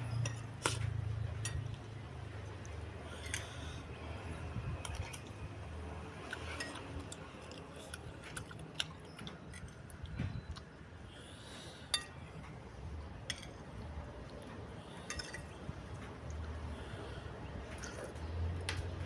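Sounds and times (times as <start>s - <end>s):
cutlery clinking against a bowl: 0.1s - 1.8s, 6.3s - 7.2s, 11.9s - 12.5s, 13.3s - 13.6s, 15.0s - 15.6s.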